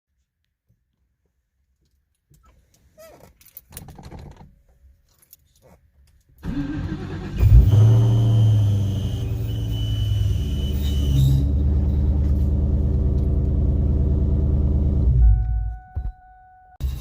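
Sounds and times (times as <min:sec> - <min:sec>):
car engine starting and idling: 0:06.4 - 0:16.1
high-pitched bearing squeal: 0:07.4 - 0:12.2.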